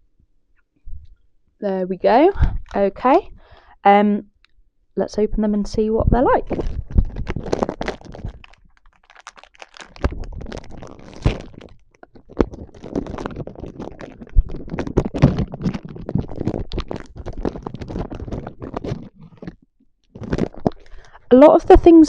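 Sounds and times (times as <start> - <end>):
biscuit wrapper crackling: 6.4 - 21.2.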